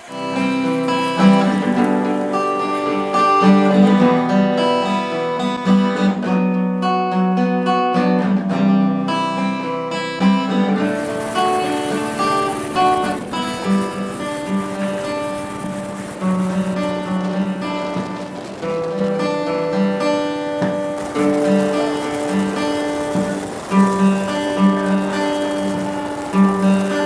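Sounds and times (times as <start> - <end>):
guitar background music: 0.0 - 27.0.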